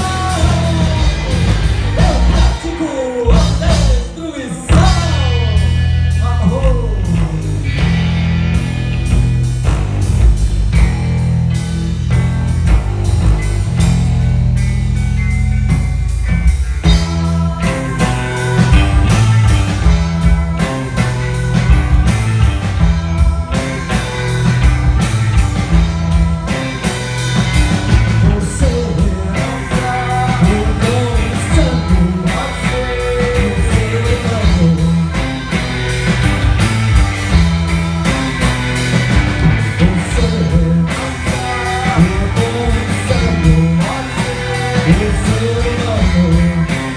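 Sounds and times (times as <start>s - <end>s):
person singing: 0.0s - 7.9s, 16.8s - 36.0s, 37.6s - 46.9s
rock band playing: 0.0s - 46.9s.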